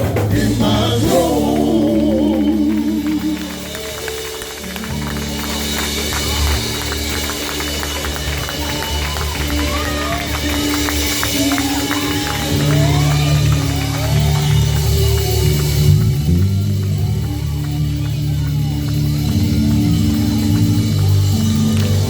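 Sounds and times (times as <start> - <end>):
bass line: 0.0 - 22.0
gospel band playing: 0.0 - 22.0
sliding guitar phrases: 0.0 - 22.0.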